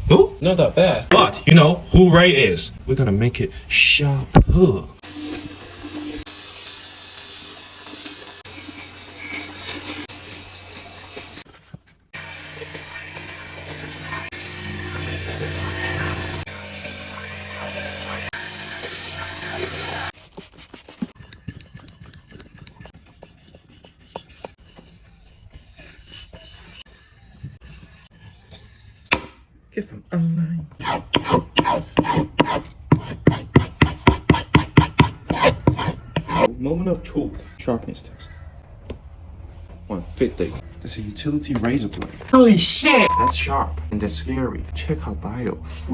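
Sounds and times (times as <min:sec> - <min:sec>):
knife blade grinding: 0:22.4 - 0:29.2, 0:30.8 - 0:36.5.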